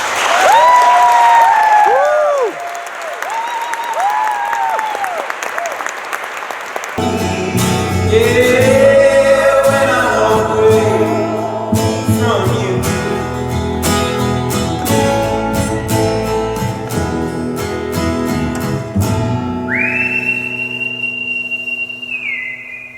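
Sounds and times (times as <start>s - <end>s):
voices singing: 7.0s - 16.8s
acoustic guitar: 7.0s - 22.9s
high whistled note: 19.6s - 22.9s.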